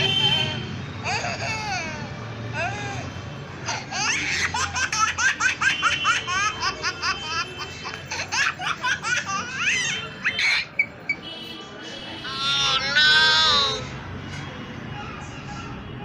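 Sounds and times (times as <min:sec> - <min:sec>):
high-pitched laughs: 0:01.0 - 0:03.1.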